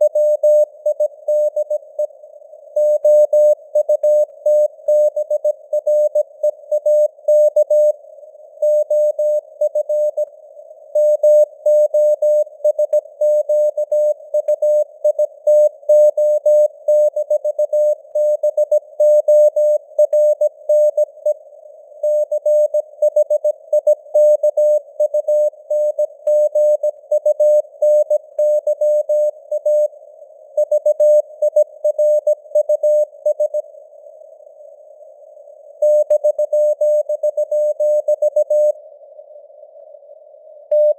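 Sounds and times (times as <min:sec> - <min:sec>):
morse code beeps: 0:35.8 - 0:38.8.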